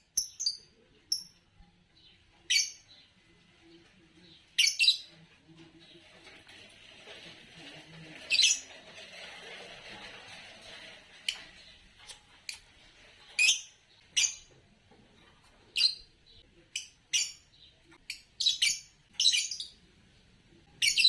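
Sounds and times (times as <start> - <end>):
lovebirds chirping: 0.0 - 5.2, 11.2 - 14.6, 15.4 - 19.9, 20.8 - 21.0.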